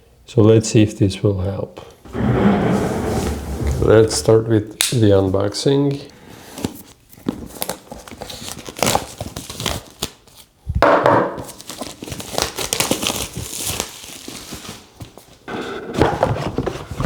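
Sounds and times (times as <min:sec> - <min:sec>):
packaging crinkling and rustling: 0:06.6 - 0:10.5, 0:11.4 - 0:15.4.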